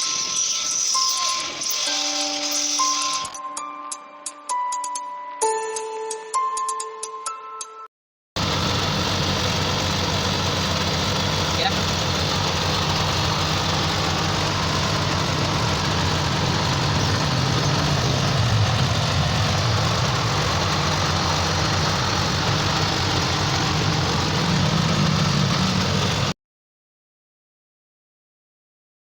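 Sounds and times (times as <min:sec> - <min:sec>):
engine idling: 0:08.4 - 0:26.4.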